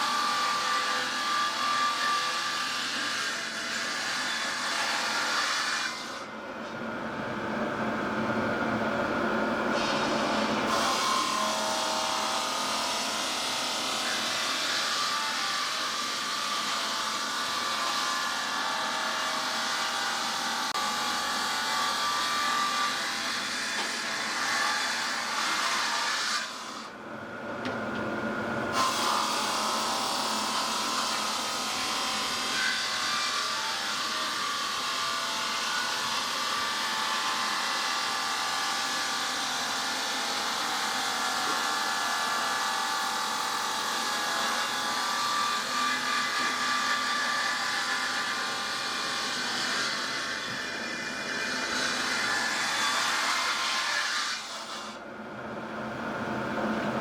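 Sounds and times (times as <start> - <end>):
stone-cutting saw grinding: 9.8 - 18.5, 28.7 - 55.0.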